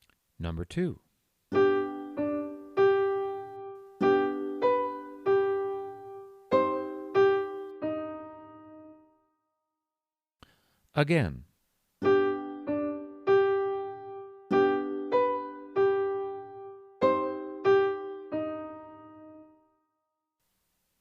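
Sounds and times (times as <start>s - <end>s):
piano melody: 1.5s - 9.4s, 12.0s - 19.9s.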